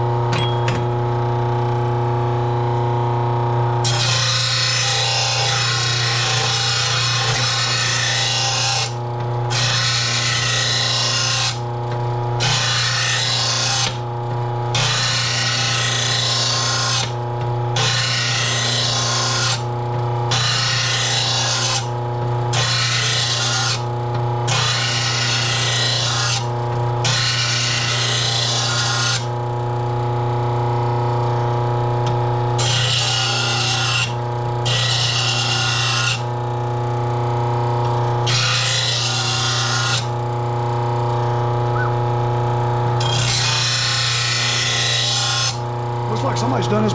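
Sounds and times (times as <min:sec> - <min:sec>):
grinder motor hum: 0:00.0 - 0:46.9
grinding metal blade: 0:03.8 - 0:11.6, 0:12.4 - 0:14.1, 0:14.7 - 0:17.2, 0:17.8 - 0:19.7, 0:20.3 - 0:29.3, 0:32.6 - 0:36.4, 0:38.2 - 0:40.2, 0:43.0 - 0:46.9.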